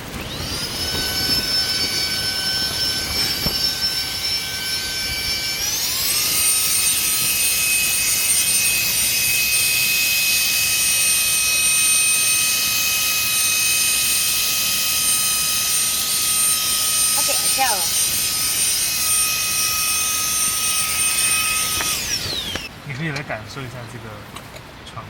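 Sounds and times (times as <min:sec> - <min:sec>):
electric air pump whining: 0:00.0 - 0:22.8.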